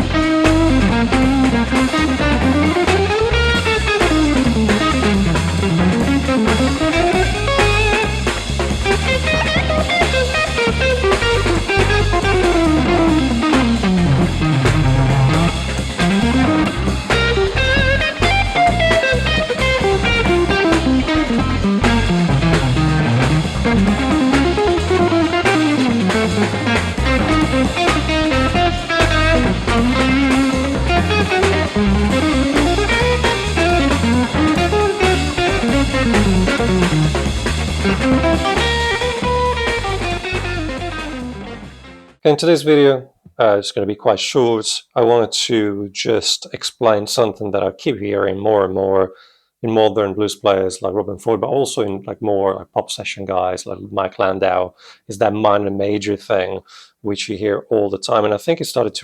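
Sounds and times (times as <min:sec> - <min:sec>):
electric guitar blues solo: 0:00.0 - 0:42.0
backing track with drum kit: 0:00.0 - 0:42.1.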